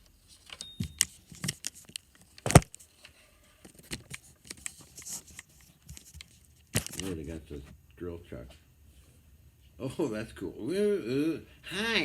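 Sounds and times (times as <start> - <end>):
clicks of objects being handled: 0.4 - 7.2.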